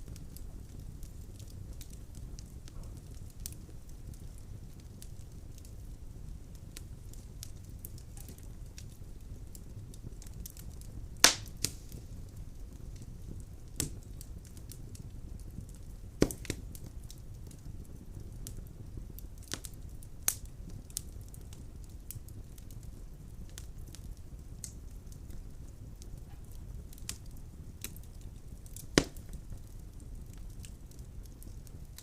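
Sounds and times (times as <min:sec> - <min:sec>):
logs crackling and popping: 0:00.0 - 0:32.0
low rumble of flames: 0:00.0 - 0:32.0
loud sharp wood pops: 0:11.2 - 0:11.7, 0:16.2 - 0:16.6, 0:29.0 - 0:29.3.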